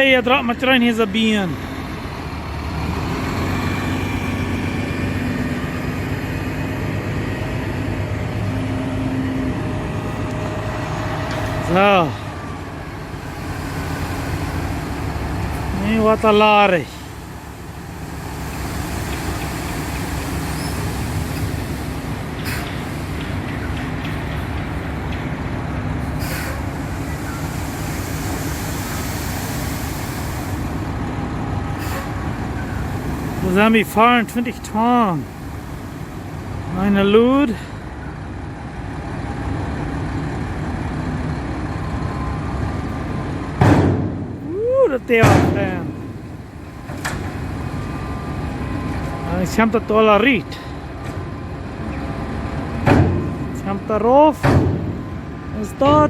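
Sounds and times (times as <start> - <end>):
road noise: 0.0 - 56.0
truck engine drone: 0.0 - 56.0
brief hiss: 26.2 - 26.6.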